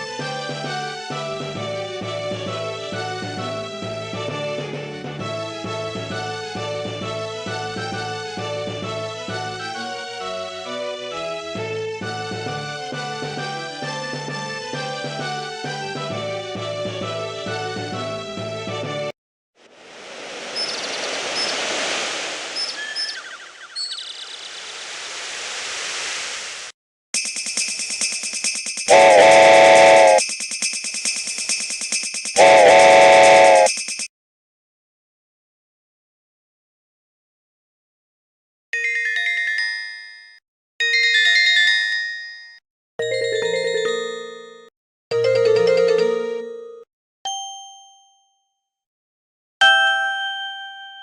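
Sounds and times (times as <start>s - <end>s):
surf-like rushing noise: 19.6s - 23.0s
electronic phone ringtones: 28.9s - 30.3s, 32.4s - 34.1s.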